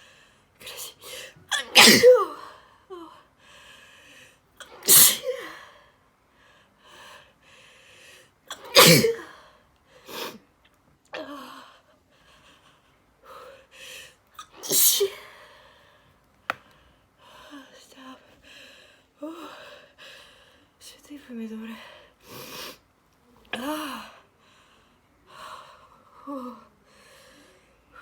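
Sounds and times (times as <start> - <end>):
woman sneezing: 1.5 - 2.4, 4.7 - 5.6, 8.5 - 9.3, 14.4 - 15.2
breathing: 3.3 - 4.5, 5.5 - 8.3, 15.3 - 17.5, 18.4 - 20.8, 24.4 - 26.0, 26.8 - 28.0.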